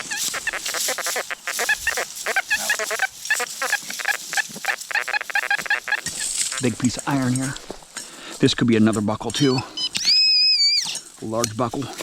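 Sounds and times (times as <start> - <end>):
metal detector chattering tones: 9.4 - 11.0.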